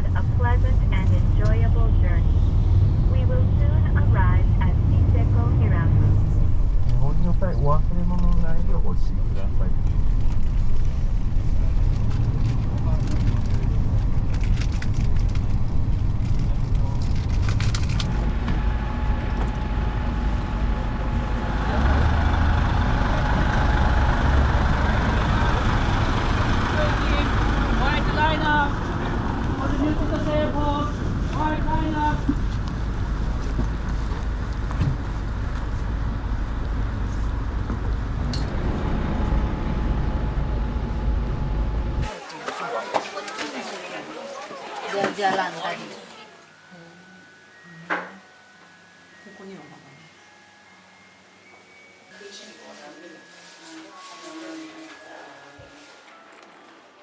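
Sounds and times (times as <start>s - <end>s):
vehicle rumbling on the move: 0.0s - 42.9s.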